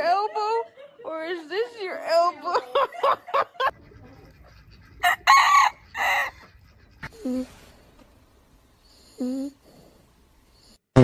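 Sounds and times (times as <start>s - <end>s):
chicken squawking and clucking: 3.7s - 7.2s.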